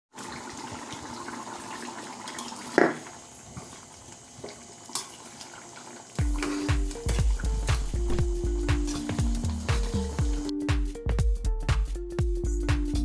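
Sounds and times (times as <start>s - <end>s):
running water: 0.1s - 10.5s
music with deep bass: 6.2s - 13.0s.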